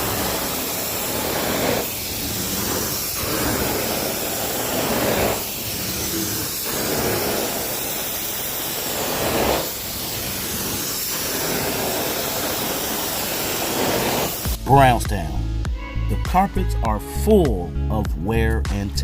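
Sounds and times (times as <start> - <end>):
carpet cleaner wand hissing: 0.0 - 14.6.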